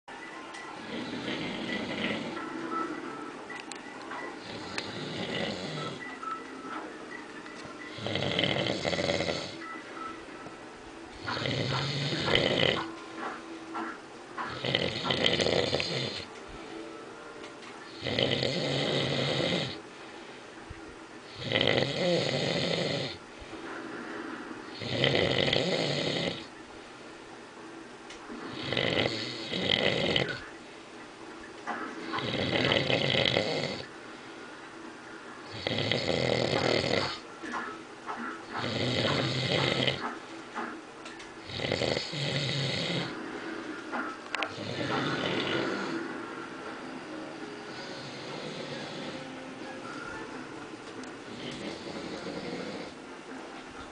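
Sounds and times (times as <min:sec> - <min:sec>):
man snoring: 0:00.9 - 0:02.4, 0:04.4 - 0:06.0, 0:07.9 - 0:09.6, 0:11.2 - 0:12.9, 0:14.5 - 0:16.3, 0:18.0 - 0:19.8, 0:21.3 - 0:23.2, 0:24.7 - 0:26.5, 0:28.5 - 0:30.4, 0:32.2 - 0:33.9, 0:35.5 - 0:37.2, 0:38.6 - 0:40.0, 0:41.4 - 0:43.2, 0:44.5 - 0:46.0, 0:47.7 - 0:49.4, 0:51.3 - 0:53.0
quiet breathing: 0:18.8 - 0:21.5, 0:22.4 - 0:27.1, 0:41.4 - 0:50.4.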